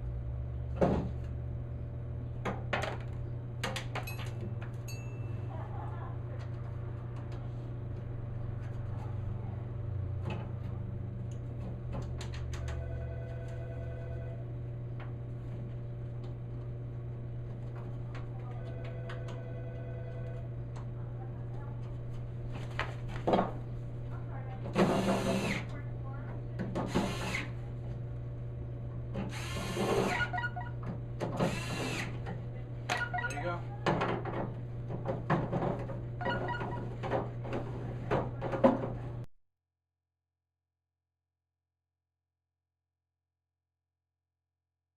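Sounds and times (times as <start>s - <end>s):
steady low hum: 0.0s - 39.3s
power drill spinning: 24.8s - 25.7s, 26.9s - 27.6s, 29.3s - 30.5s, 31.4s - 32.1s.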